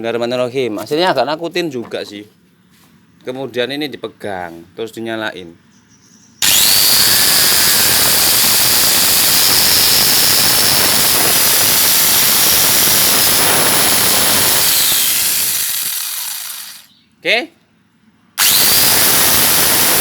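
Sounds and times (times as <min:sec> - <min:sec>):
angle grinder high whine: 0:06.4 - 0:16.9, 0:18.4 - 0:20.0.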